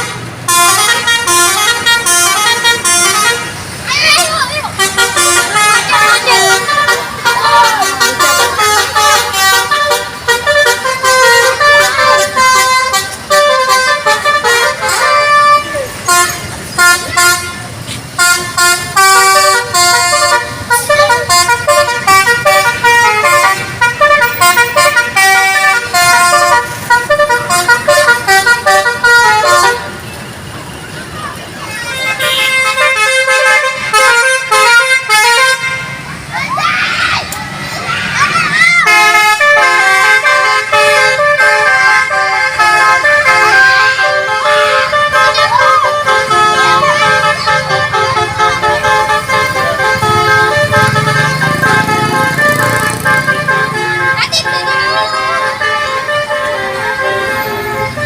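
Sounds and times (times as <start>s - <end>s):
musical bus air horns: 0.0s - 30.1s, 31.7s - 36.3s, 38.6s - 58.0s
excited shouting voices: 3.8s - 10.2s, 36.2s - 40.0s, 43.7s - 50.9s, 54.0s - 55.7s.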